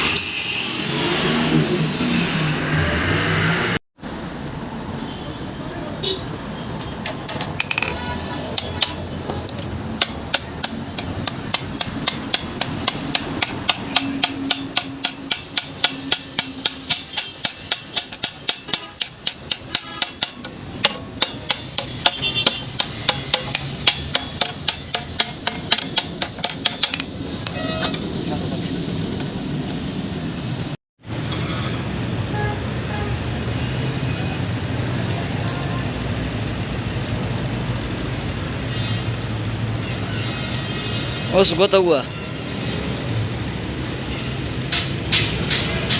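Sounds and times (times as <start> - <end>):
hammer striking iron: 8.5 - 27.9, 44.7 - 45.9.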